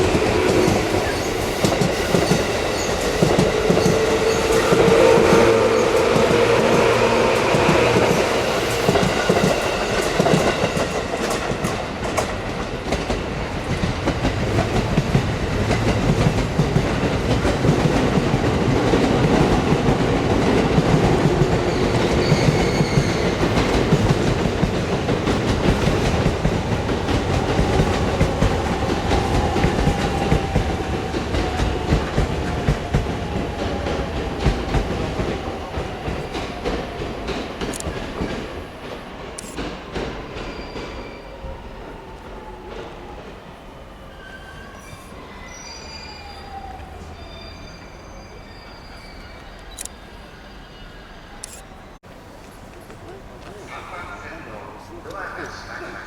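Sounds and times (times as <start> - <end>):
train wheels clicking on rails: 0.0 - 43.4.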